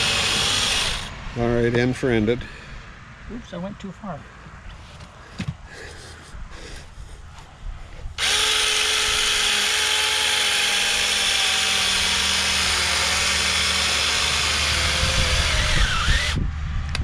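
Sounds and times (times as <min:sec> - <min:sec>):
small chainsaw running: 0:00.0 - 0:01.2, 0:08.2 - 0:16.4.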